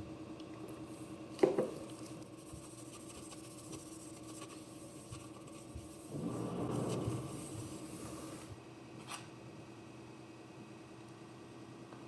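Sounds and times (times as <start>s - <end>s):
steady low hum: 0.0s - 12.0s
object knocking on hard surface: 1.4s - 1.8s.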